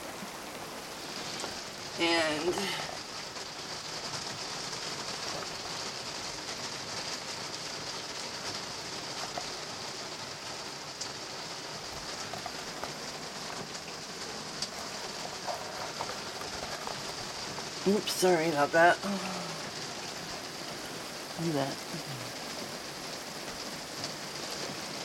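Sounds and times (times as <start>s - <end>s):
water hissing: 8.3s - 25.0s.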